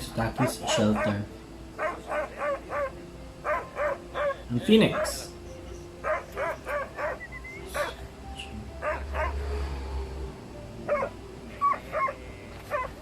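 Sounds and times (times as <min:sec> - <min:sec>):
dog barking: 0:00.4 - 0:05.3, 0:06.0 - 0:08.0, 0:08.8 - 0:09.4, 0:10.9 - 0:13.0.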